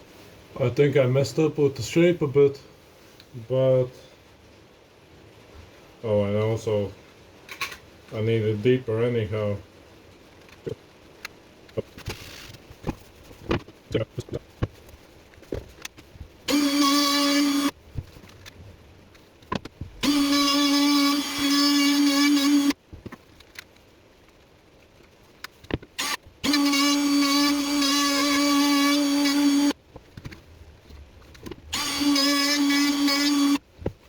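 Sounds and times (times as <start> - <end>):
high-speed power tool whine: 16.5 - 17.7, 20.0 - 22.8, 26.0 - 29.8, 31.7 - 33.6.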